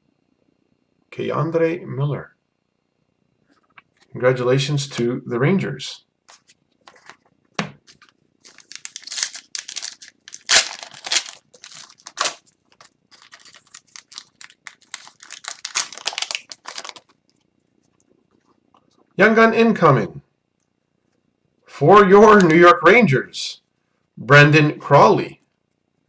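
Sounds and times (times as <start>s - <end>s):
cards rustling: 6.3s - 7.2s, 7.8s - 17.2s
wrapper tearing and crinkling: 7.9s - 17.2s.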